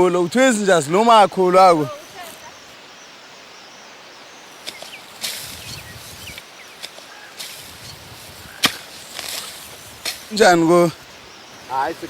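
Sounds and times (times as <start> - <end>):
rustling scraping bursts: 4.6 - 12.0
sharp snap: 8.6 - 10.3.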